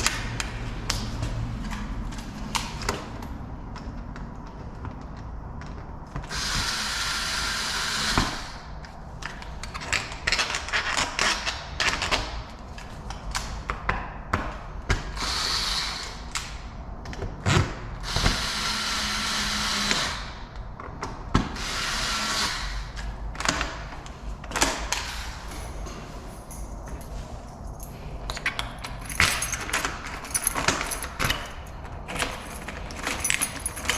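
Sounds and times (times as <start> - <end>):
lock hardware clicks and knocks: 27.8 - 33.9.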